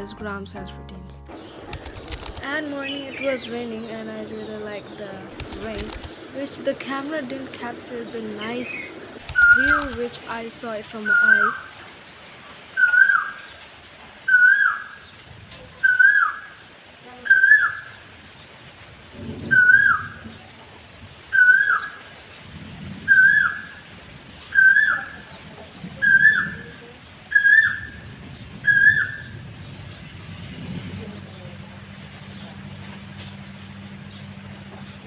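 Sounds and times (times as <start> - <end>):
low background rumble: 29.3 - 35.0.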